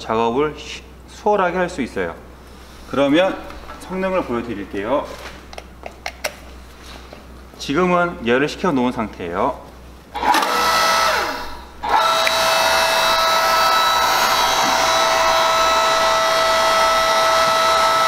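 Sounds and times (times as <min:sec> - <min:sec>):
log splitter motor whining: 0:10.1 - 0:18.0.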